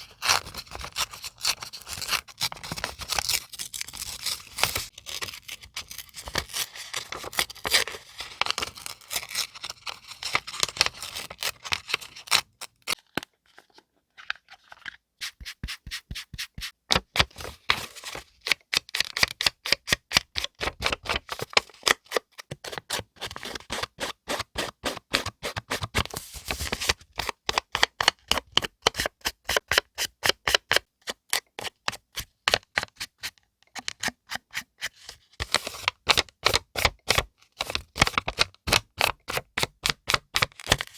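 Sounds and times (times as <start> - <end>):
paper crinkling and rustling: 26.0 - 27.1.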